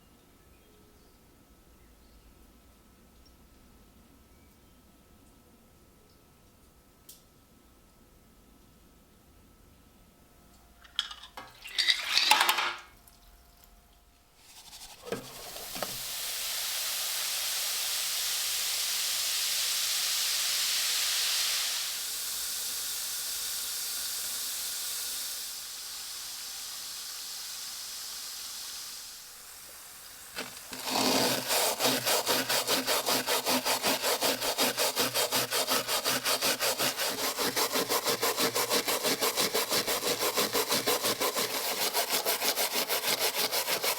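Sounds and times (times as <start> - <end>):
rubbing hiss: 14.4 - 43.9
hand saw cutting wood: 14.5 - 16.1, 30.4 - 43.9.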